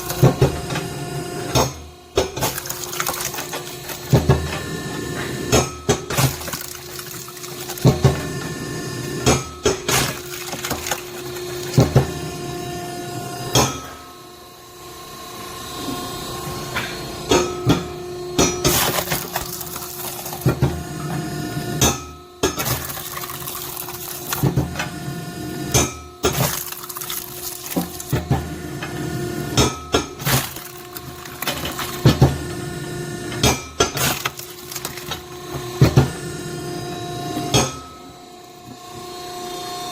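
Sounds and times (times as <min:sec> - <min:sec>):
hydraulic log splitter humming: 0:00.0 - 0:14.0, 0:15.9 - 0:39.9
wood splitting cracks: 0:02.3 - 0:04.3, 0:06.1 - 0:08.2, 0:09.3 - 0:12.1, 0:18.6 - 0:20.6, 0:22.5 - 0:24.6, 0:25.8 - 0:28.3, 0:30.0 - 0:32.3, 0:33.4 - 0:35.6
split wood clattering down: 0:02.4 - 0:04.4, 0:06.1 - 0:08.2, 0:09.7 - 0:12.1, 0:18.7 - 0:20.6, 0:22.6 - 0:24.6, 0:26.2 - 0:28.3, 0:30.2 - 0:32.3, 0:33.4 - 0:35.3.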